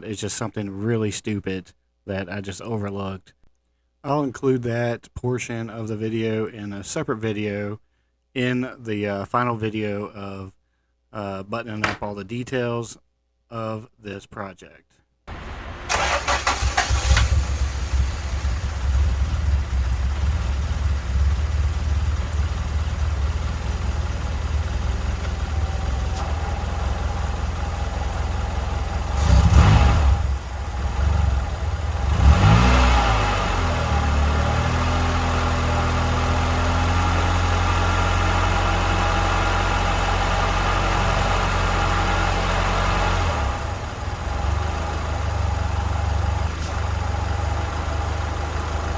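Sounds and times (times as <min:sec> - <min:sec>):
car engine running and revving: 0:15.3 - 0:48.9.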